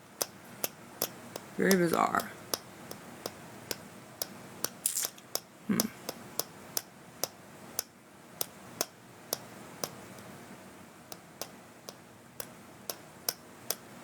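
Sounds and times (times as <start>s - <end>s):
faint room hiss: 0.0s - 14.0s.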